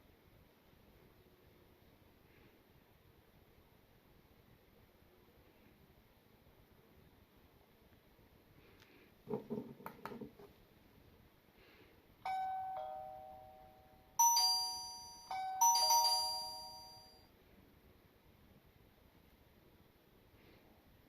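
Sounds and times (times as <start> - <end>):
doorbell ding-dong chime: 12.3 - 17.2.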